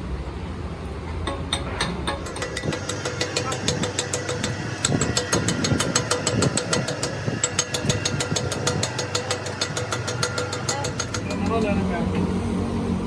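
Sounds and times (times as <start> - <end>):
rapid even ticking: 1.3 - 11.8
motor humming: 1.6 - 11.8.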